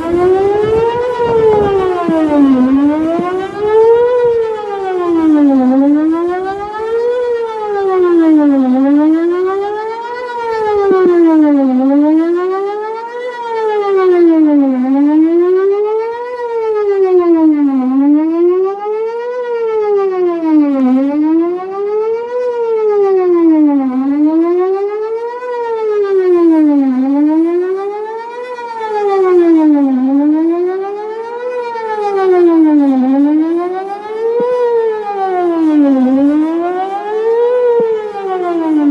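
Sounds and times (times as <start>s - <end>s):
siren wailing: 0.0s - 38.9s.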